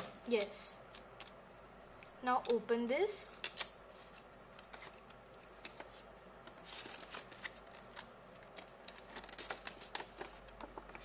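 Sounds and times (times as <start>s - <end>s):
paper rustling: 3.9s - 11.0s.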